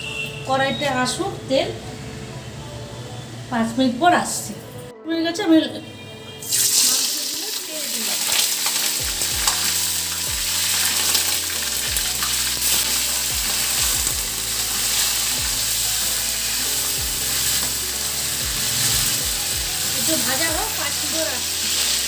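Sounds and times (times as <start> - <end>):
food sizzling in hot oil: 6.4 - 22.0.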